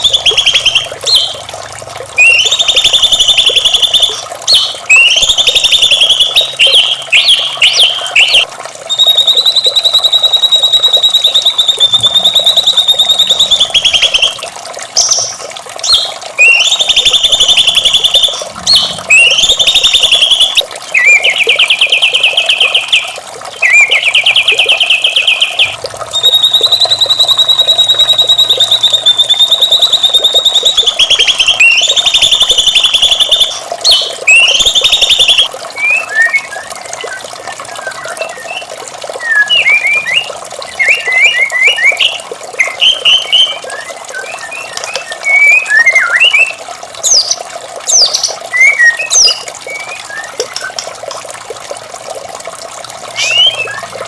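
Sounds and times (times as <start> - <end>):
bird singing: 0.0 - 1.4, 2.2 - 14.4, 15.0 - 47.3, 48.0 - 50.8, 53.1 - 54.0.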